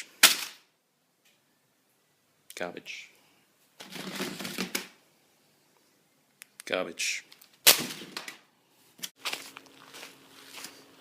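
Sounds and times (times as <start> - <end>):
plastic disks clattering into bin: 3.8 - 5.0, 7.7 - 8.4.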